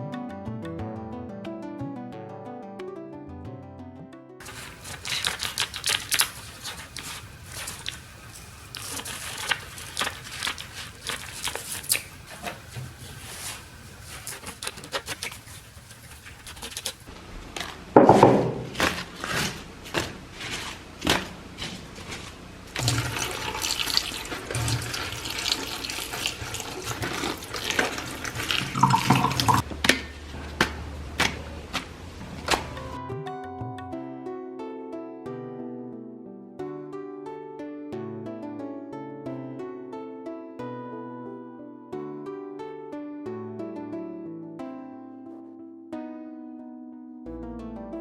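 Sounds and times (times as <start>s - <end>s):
knocks and clatters of handling: 4.4s - 23.2s
water splashing and running: 4.4s - 29.6s.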